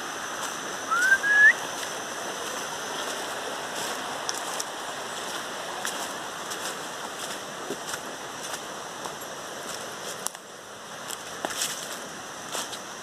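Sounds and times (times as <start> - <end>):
steady rushing hiss: 0.0 - 13.0
short rising whistle: 0.9 - 1.6.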